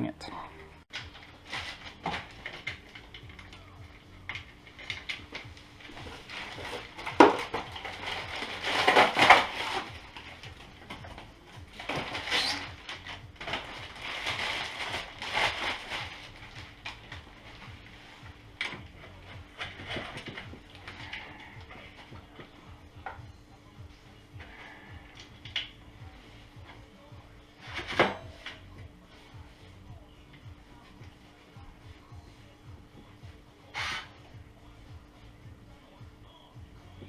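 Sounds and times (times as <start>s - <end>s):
packaging rustling and scraping: 0.9s - 3.6s, 4.3s - 22.5s.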